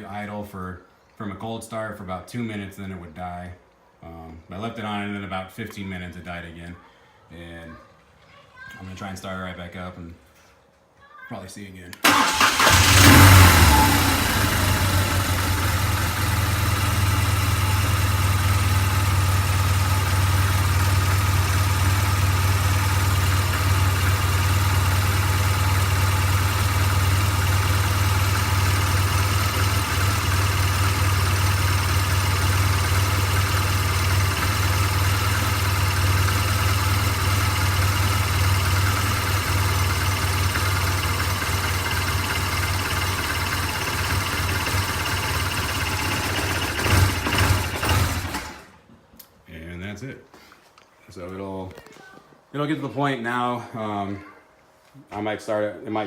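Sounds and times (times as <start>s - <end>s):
motorcycle engine starting and idling: 12.0s - 48.8s.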